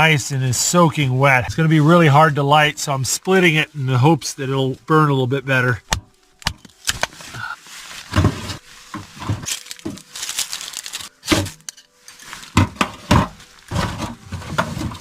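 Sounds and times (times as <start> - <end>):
firewood being split by hand: 5.8 - 15.0.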